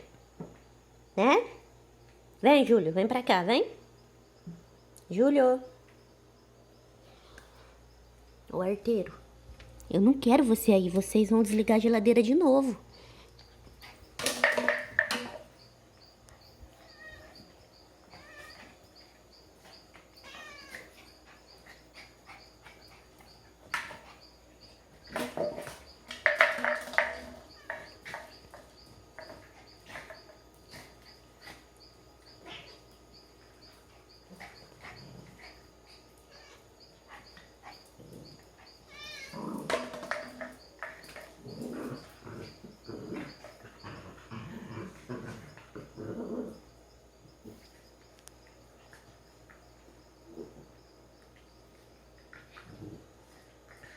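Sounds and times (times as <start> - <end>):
animal vocal sounds: 29.2 - 46.8.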